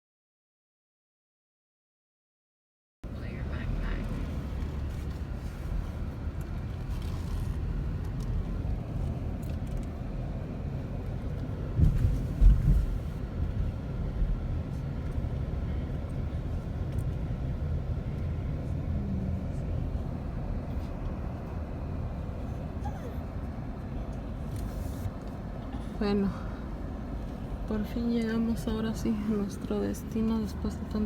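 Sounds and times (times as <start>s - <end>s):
car road rumble: 3.0s - 31.0s
car thumps: 11.7s - 13.2s.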